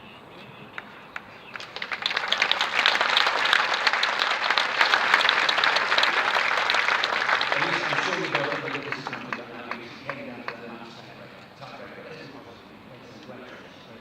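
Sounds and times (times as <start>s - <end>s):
crowd applauding: 0.8s - 10.6s.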